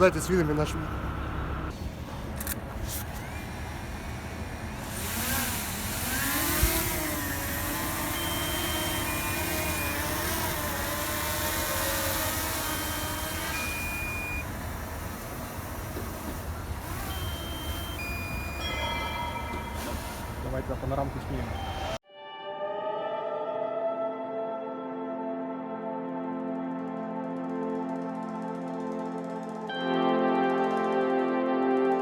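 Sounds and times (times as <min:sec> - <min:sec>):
drone propellers whining: 0:00.0 - 0:22.0
short high beeps: 0:07.8 - 0:10.6, 0:13.0 - 0:14.5, 0:17.0 - 0:20.5.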